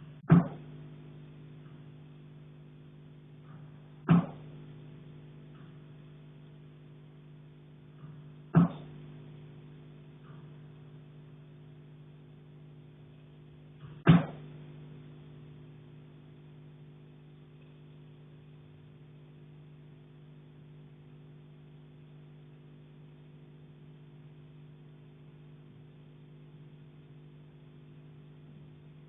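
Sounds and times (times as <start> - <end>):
steady low hum: 0.0 - 29.0
loud knock on a pipe: 0.3 - 0.6, 4.1 - 4.5, 8.6 - 8.9, 14.0 - 14.5.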